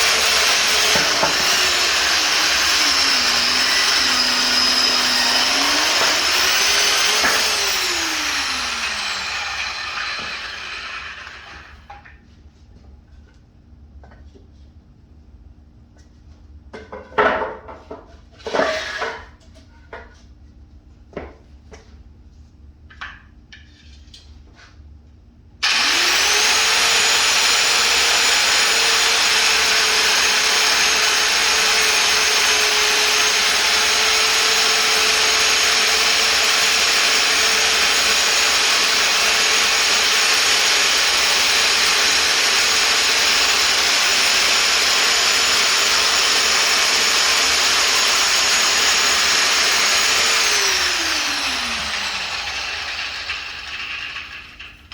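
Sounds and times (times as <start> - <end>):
power tool whining: 0.0 - 11.9, 25.6 - 54.9.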